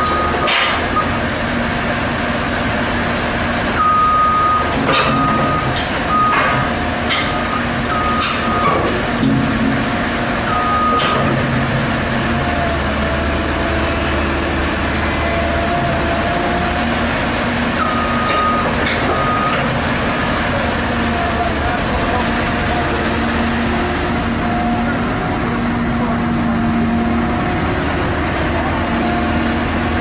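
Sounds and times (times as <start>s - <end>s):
heavy vehicle engine running: 0.0s - 30.0s
reversing alarm beeps: 3.8s - 6.7s, 7.3s - 8.8s, 10.5s - 11.3s, 17.8s - 19.7s.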